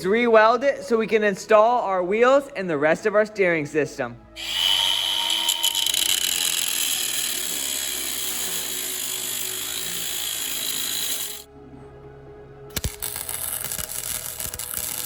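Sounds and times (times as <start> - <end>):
welding arc crackling: 4.4 - 11.5, 12.7 - 15.0.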